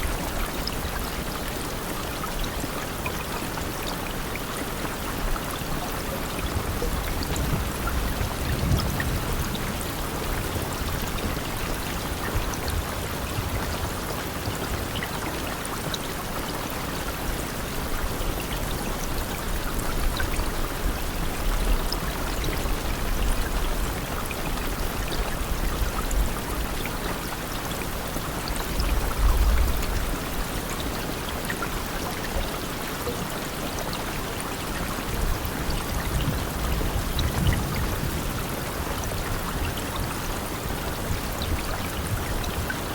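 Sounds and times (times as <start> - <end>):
steady rain falling: 0.0 - 42.9.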